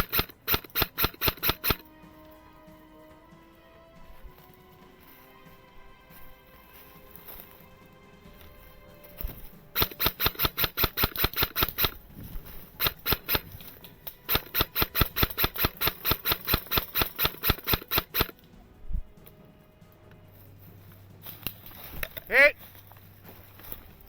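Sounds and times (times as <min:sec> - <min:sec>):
airsoft rifle rapid shots: 0:00.0 - 0:01.8, 0:09.8 - 0:12.1, 0:12.7 - 0:18.4.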